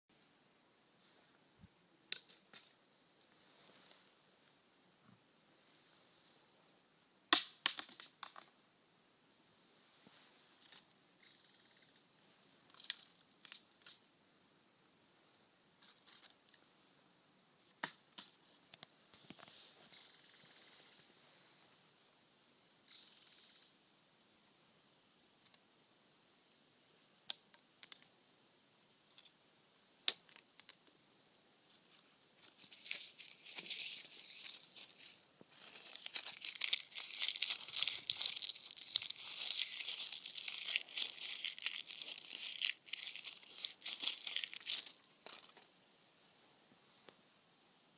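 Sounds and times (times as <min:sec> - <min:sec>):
high insect trill: 0:00.1 - 0:47.9
dry leaves crackling and rustling: 0:32.4 - 0:45.0.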